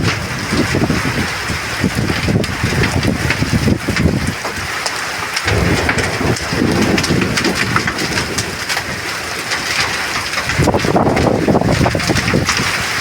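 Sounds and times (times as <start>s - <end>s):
heavy rain hissing: 5.4s - 12.2s
gusty wind rumble: 5.4s - 13.0s
hailstones striking surfaces: 5.4s - 13.0s.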